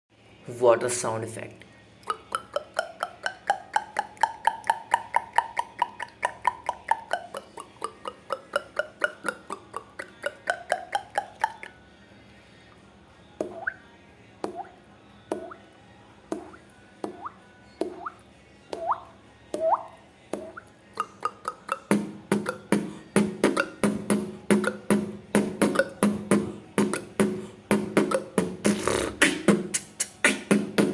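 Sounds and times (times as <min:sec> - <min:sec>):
beatboxed water-drop plops: 0:02.0 - 0:11.8, 0:13.4 - 0:13.8, 0:14.4 - 0:15.7, 0:16.3 - 0:30.9.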